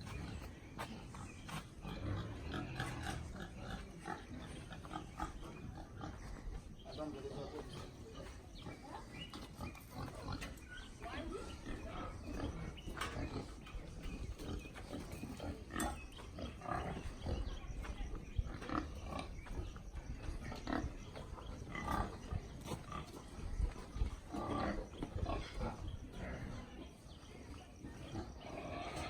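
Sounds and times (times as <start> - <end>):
pigs grunting: 0.0 - 29.0.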